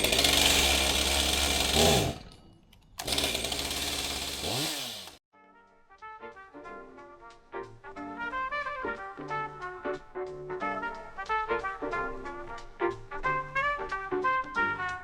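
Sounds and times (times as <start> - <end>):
chainsaw revving: 0.0 - 2.3, 3.0 - 5.2
music with brass: 5.4 - 15.0.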